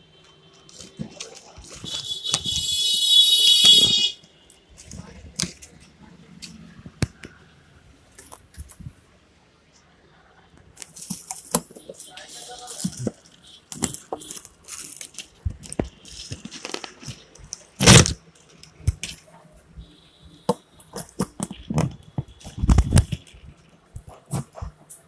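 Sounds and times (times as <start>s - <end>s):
hands and tools clicking and scraping: 10.8s - 19.4s, 20.5s - 25.0s.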